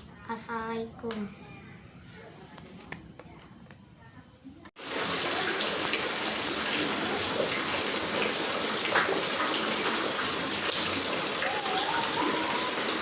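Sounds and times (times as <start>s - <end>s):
rain falling: 4.8s - 13.0s.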